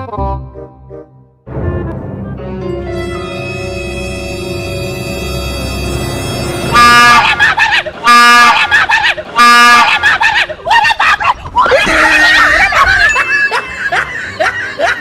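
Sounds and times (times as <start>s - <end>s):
train horn blasts: 2.9s - 7.2s
people screaming: 6.9s - 15.0s.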